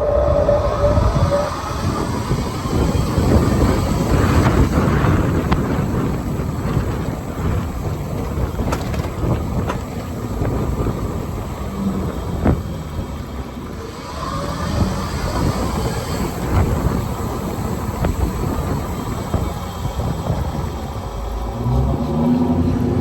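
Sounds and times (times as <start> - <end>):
road rumble: 0.0 - 23.0
wind buffeting microphone: 0.0 - 23.0
knocks and rattles over bumps: 3.6 - 13.5.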